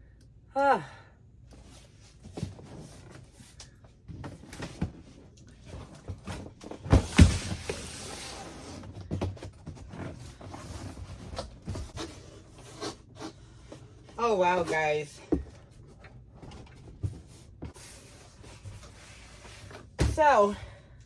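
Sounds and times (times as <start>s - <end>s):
box scraping: 4.3s - 20.2s
cardboard box knocks and rustling: 5.9s - 7.9s.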